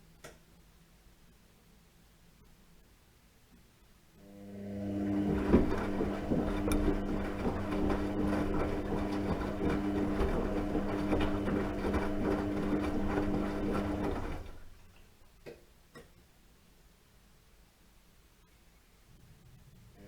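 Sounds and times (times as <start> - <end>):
washing machine motor hum: 4.4 - 15.0.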